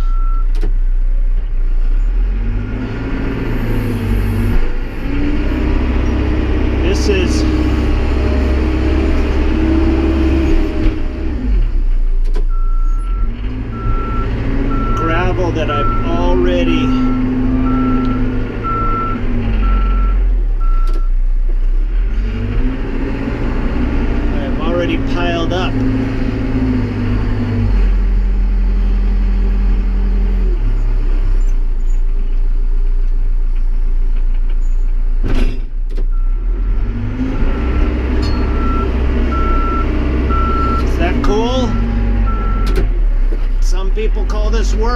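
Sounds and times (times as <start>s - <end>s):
reversing alarm beeping: 0.0s - 0.5s, 12.5s - 21.1s, 37.4s - 42.8s
backhoe engine running under load: 0.0s - 44.9s.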